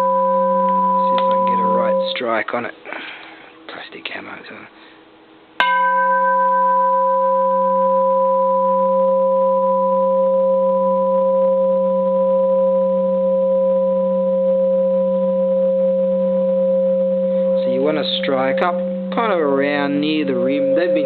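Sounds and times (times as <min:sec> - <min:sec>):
temple bell ringing: 0:00.0 - 0:02.2, 0:05.6 - 0:11.0, 0:17.4 - 0:21.0.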